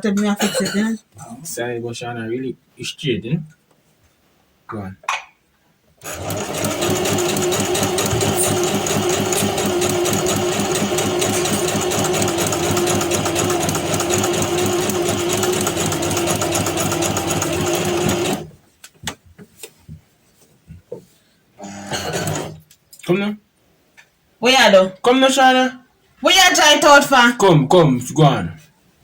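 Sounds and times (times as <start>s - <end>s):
sewing machine running: 6.0s - 18.6s, 21.6s - 22.6s.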